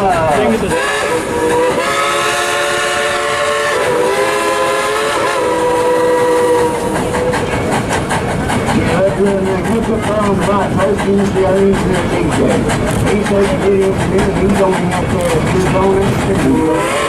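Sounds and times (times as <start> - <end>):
train rumble and clatter: 0.0 - 17.0
steam locomotive whistle: 0.6 - 7.4, 16.5 - 17.0.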